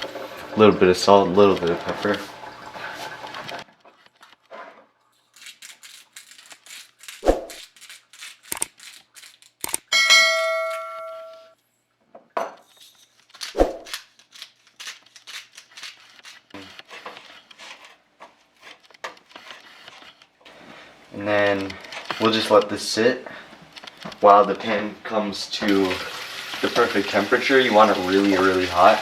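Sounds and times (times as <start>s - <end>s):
metal pan ringing when struck: 9.9s - 11.5s.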